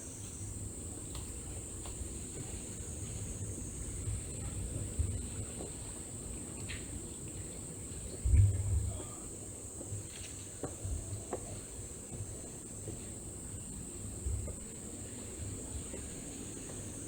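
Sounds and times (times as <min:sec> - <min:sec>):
crickets chirring: 0:00.0 - 0:17.0
low rumble: 0:08.2 - 0:09.0.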